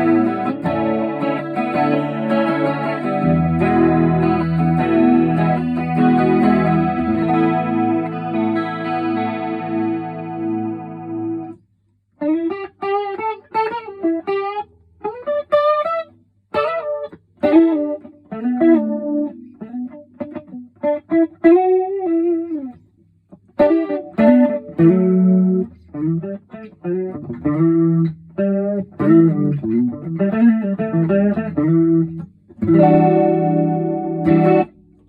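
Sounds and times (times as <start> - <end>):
electric guitar with chorus effect: 0.0 - 35.0.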